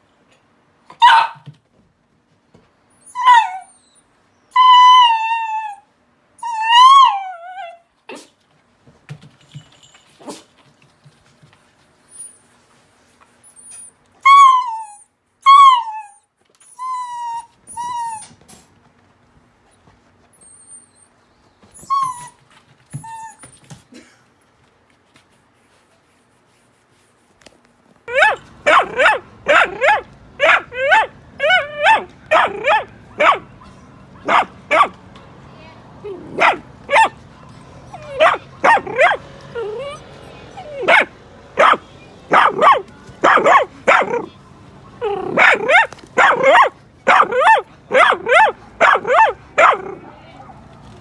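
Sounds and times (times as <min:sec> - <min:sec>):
dog barking: 0:01.0 - 0:01.4, 0:28.1 - 0:35.0, 0:36.1 - 0:44.4, 0:45.0 - 0:50.7.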